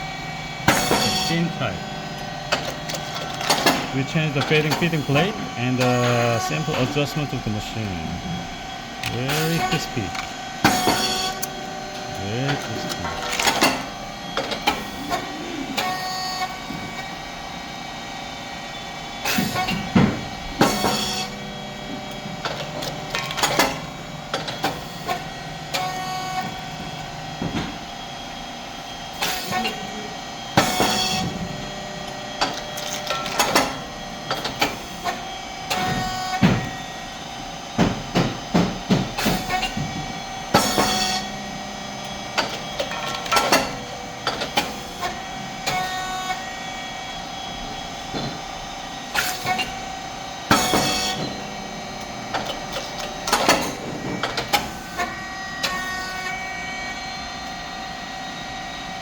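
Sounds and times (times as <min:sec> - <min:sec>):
machine hum: 0:00.0 - 0:54.6.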